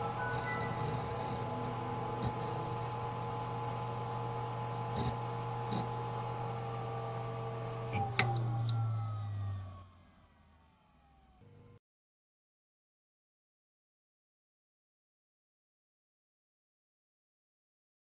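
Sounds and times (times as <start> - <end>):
computer fan and drives humming: 0.0 - 11.8.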